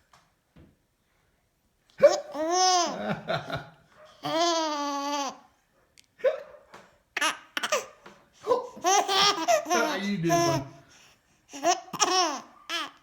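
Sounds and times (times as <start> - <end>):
baby laughing: 2.0 - 3.2, 4.2 - 5.5, 7.2 - 10.8, 11.5 - 13.0
baby hiccups: 7.2 - 8.0.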